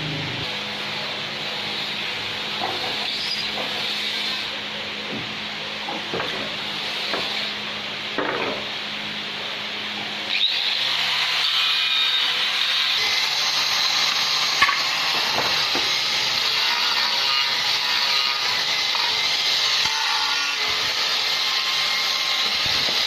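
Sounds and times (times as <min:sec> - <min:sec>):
power tool whining on wood: 0:10.3 - 0:23.0.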